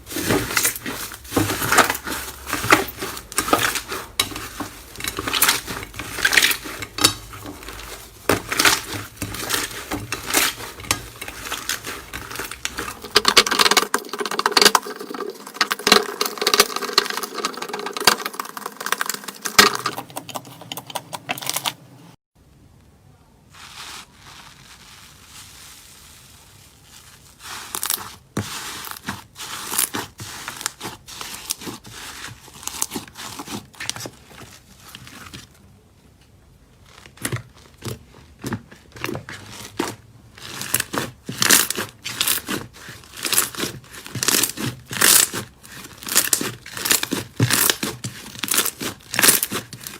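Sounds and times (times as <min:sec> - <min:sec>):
slime crackling and popping: 0:00.0 - 0:15.2, 0:36.8 - 0:49.9.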